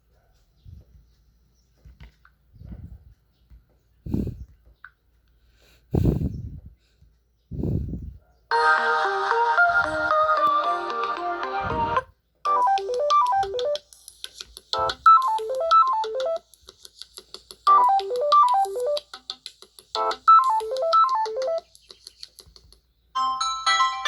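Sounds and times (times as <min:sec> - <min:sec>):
bell-like synth ringtone: 0:08.5 - 0:11.7, 0:12.5 - 0:13.8, 0:14.8 - 0:16.4, 0:20.0 - 0:21.6, 0:23.2 - 0:24.0
different ringtone: 0:08.5 - 0:14.0, 0:14.7 - 0:16.5, 0:17.7 - 0:19.3, 0:19.9 - 0:21.7, 0:23.2 - 0:24.0.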